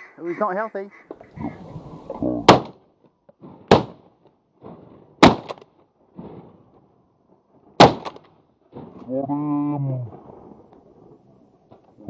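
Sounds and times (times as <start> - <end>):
shotgun shots with echo: 3.7 - 4.0, 5.2 - 5.6, 7.8 - 8.2.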